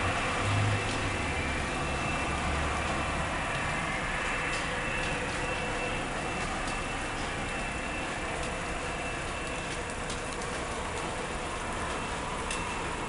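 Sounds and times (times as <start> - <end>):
rain drops ticking: 0.0 - 13.0.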